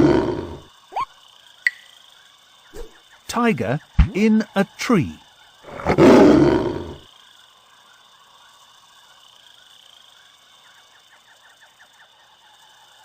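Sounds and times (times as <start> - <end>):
tiger roar: 0.0 - 0.7, 5.6 - 7.0
steady high hiss: 0.0 - 13.0
chirps: 7.7 - 13.0.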